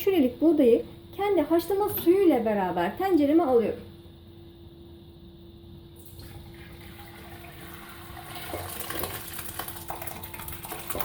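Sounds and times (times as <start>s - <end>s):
water pouring into a pot: 6.0s - 11.0s.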